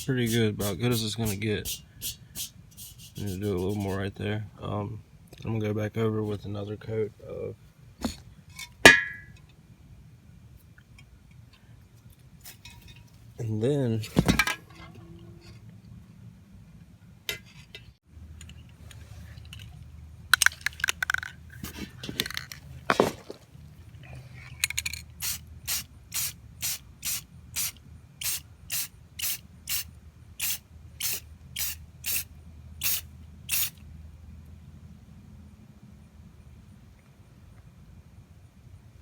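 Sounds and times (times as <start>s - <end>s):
aerosol spray can hissing: 25.2s - 32.2s, 32.8s - 33.8s.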